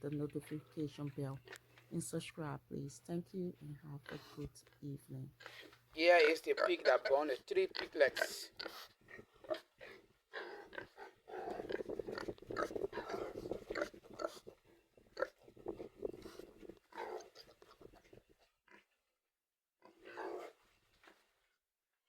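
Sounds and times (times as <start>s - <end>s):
pigs grunting and snuffling: 4.0s - 4.8s, 5.4s - 18.9s, 19.8s - 20.6s.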